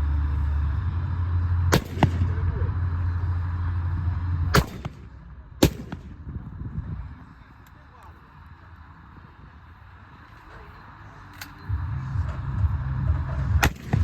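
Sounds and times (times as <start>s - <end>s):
low rumble: 0.0s - 14.0s
gunshots: 1.7s - 2.6s, 4.5s - 6.4s, 13.6s - 14.0s.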